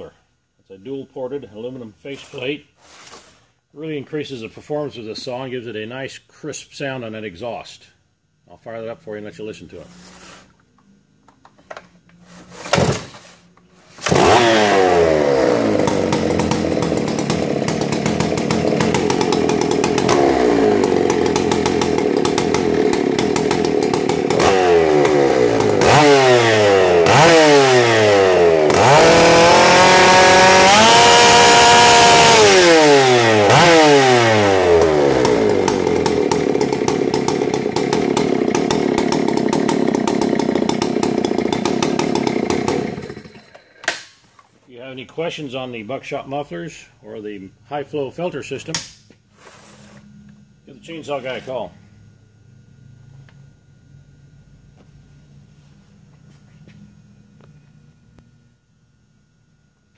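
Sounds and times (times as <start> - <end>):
chainsaw engine revving: 14.0 - 44.0.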